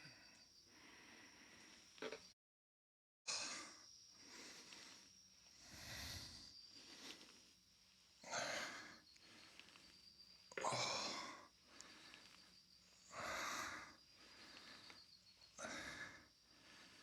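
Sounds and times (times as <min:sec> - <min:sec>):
man breathing hard: 0:00.0 - 0:01.9, 0:03.3 - 0:17.0.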